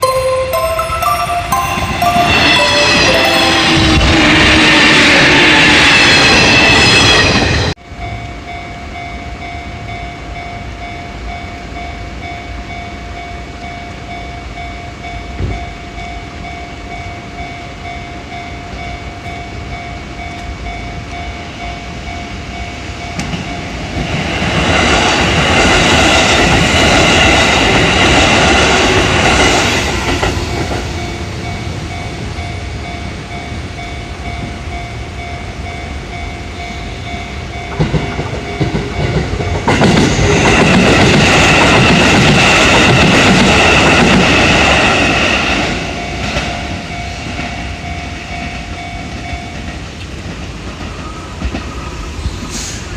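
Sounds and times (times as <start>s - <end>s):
crossing warning bell ringing: 0.0s - 50.8s
train wheels clacking over rail joints: 37.7s - 44.7s.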